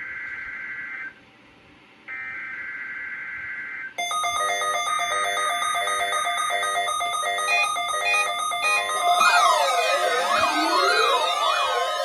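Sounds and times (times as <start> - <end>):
electronic alert tone: 4.0 - 12.0
screechy data tone bursts: 4.8 - 12.0.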